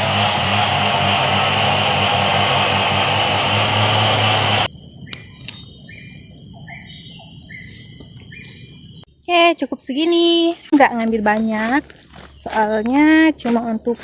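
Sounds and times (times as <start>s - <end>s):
loud rushing noise with hum: 0.0s - 4.7s
insects whining: 0.0s - 14.0s.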